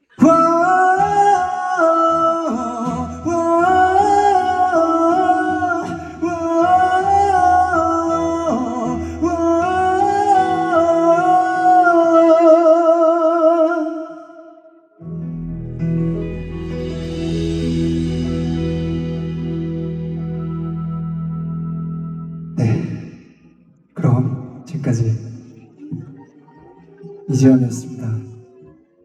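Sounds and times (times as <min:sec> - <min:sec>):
live band accompaniment: 0:00.2 - 0:11.8, 0:15.1 - 0:23.3.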